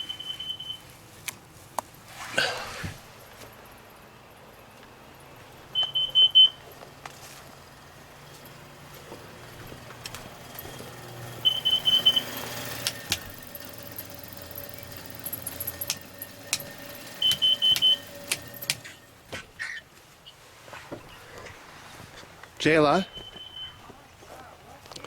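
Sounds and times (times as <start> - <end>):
low steady hum: 3.1 - 19.6
alarm high beeps: 5.8 - 6.6, 11.3 - 19.1
clicks: 8.3 - 19.4.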